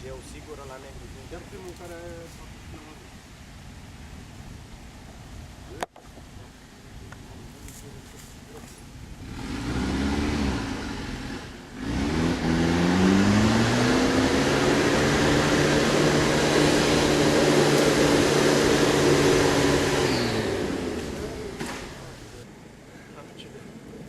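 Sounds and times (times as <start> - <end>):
engine revving hard: 9.2 - 22.4.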